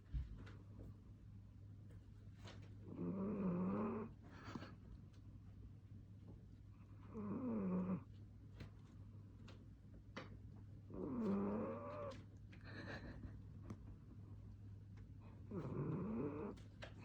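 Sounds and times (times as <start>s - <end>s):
cat snoring: 2.9s - 4.1s, 7.1s - 8.1s, 10.9s - 12.1s, 15.5s - 16.6s.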